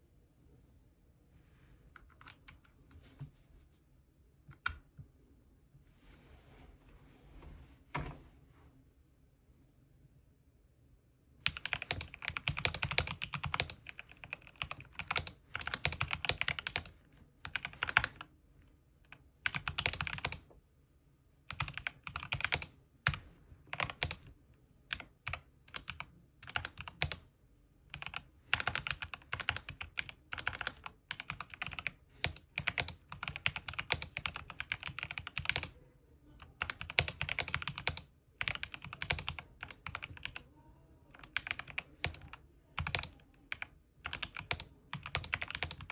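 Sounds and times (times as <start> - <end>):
mechanical keyboard typing: 11.4 - 18.3, 19.4 - 20.4, 21.5 - 24.3, 24.9 - 27.2, 27.9 - 35.8, 36.5 - 40.4, 41.1 - 45.9.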